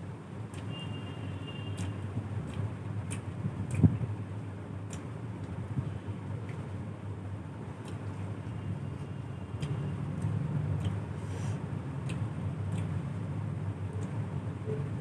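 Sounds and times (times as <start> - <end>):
eating sounds: 1.8 - 4.0, 9.6 - 13.3.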